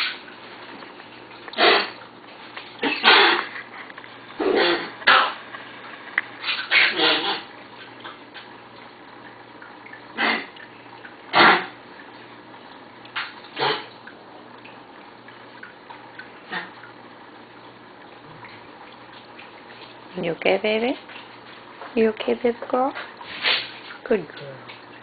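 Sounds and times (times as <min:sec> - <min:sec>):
dog coughing: 0:01.6 - 0:02.0, 0:02.8 - 0:03.5, 0:04.4 - 0:05.4, 0:06.6 - 0:07.5, 0:10.2 - 0:10.6, 0:11.3 - 0:11.8, 0:13.6 - 0:13.9.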